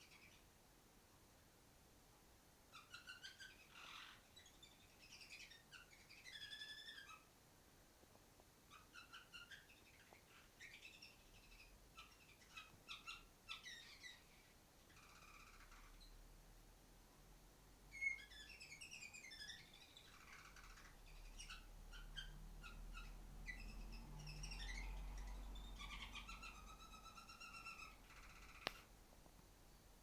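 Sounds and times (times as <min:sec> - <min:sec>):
canary chirping and twittering: 0:00.0 - 0:00.5, 0:02.7 - 0:07.4, 0:08.7 - 0:16.2, 0:17.9 - 0:28.9.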